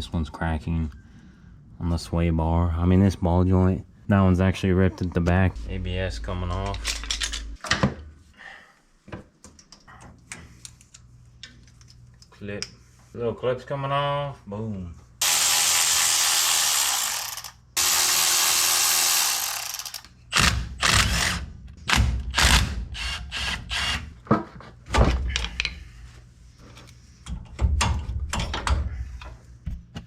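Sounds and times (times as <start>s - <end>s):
metal parts clattering: 6.6s - 7.6s
power tool whining: 15.2s - 21.3s.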